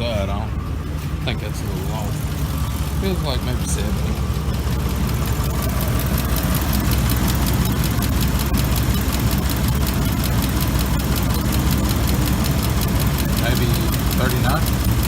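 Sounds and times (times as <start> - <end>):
engine idling: 0.0 - 15.0
fast light ticking: 3.7 - 15.0.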